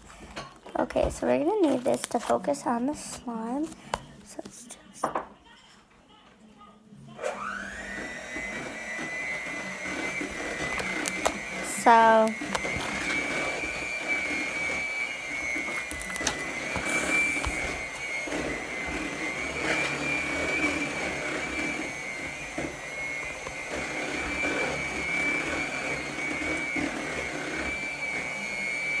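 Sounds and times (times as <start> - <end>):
slime squishing: 0.0 - 4.6, 9.9 - 26.9.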